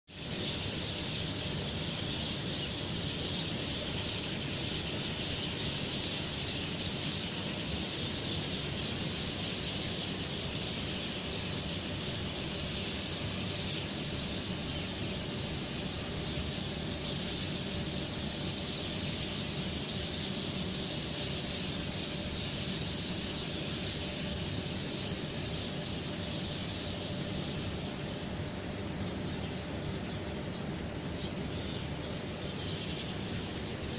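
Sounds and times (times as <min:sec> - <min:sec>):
steady high hiss: 0:00.1 - 0:33.9.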